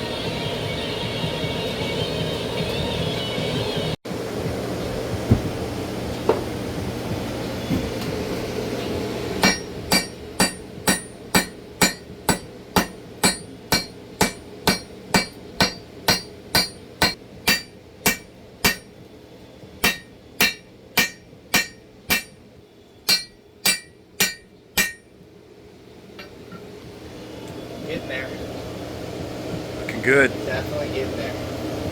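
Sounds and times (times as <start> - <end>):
hammer ringing on anvil: 9.4 - 19.0, 19.8 - 22.4, 23.1 - 25.1.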